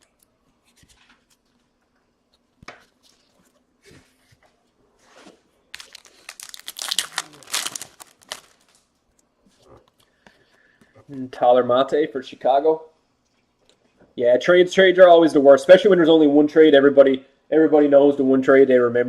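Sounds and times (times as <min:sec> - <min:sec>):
cards rustling and clicking: 0:05.7 - 0:08.8
wrapper tearing and crinkling: 0:05.7 - 0:08.9.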